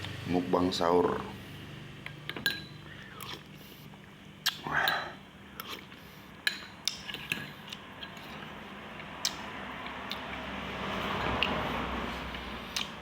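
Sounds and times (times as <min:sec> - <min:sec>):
chewing: 0:03.0 - 0:05.0, 0:05.6 - 0:13.0.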